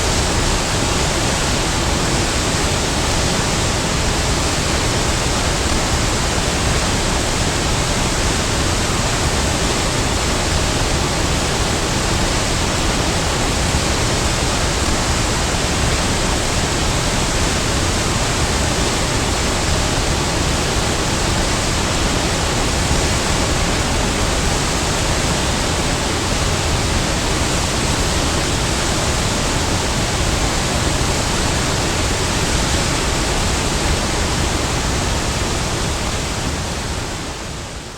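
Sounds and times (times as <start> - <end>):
waterfall rushing: 0.0 - 37.9.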